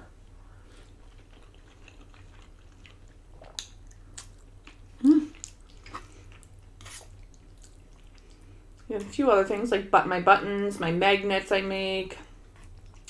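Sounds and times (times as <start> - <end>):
person chewing food: 0.6 - 8.9, 12.5 - 13.0.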